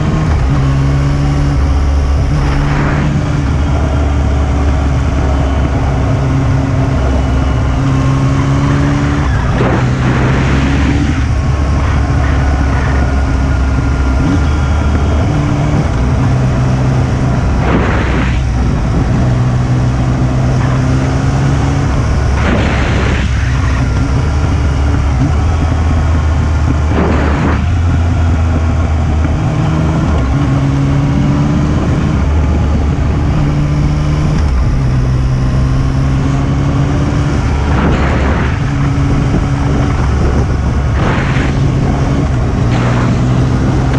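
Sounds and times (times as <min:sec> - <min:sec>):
engine hum on closed throttle: 0:00.0 - 0:43.9
motorcycle engine riding: 0:00.0 - 0:43.9
short rushes of noise: 0:17.6 - 0:18.6, 0:22.4 - 0:23.8, 0:40.8 - 0:43.5.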